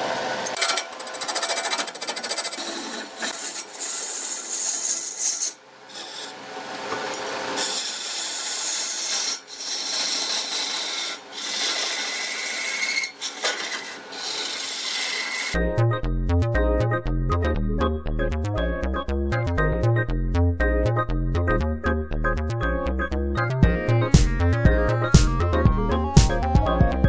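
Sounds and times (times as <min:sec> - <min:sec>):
tool rasping on turning wood: 0:00.6 - 0:06.4, 0:07.6 - 0:15.6.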